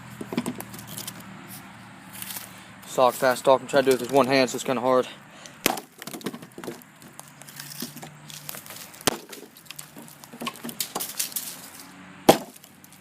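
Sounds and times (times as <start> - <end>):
tomahawk chopping into branch: 5.6 - 6.8, 7.6 - 11.5, 12.3 - 12.7
wood crackles and clicks: 5.7 - 11.8.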